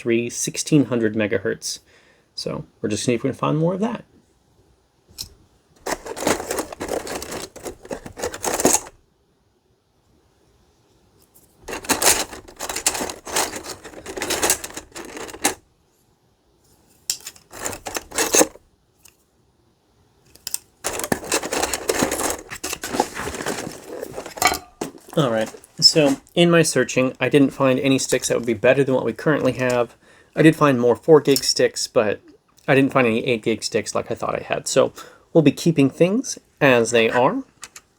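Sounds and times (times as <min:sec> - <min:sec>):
computer memory sticks clattering: 0:05.8 - 0:09.0, 0:11.7 - 0:15.6, 0:17.1 - 0:18.6, 0:20.4 - 0:26.2.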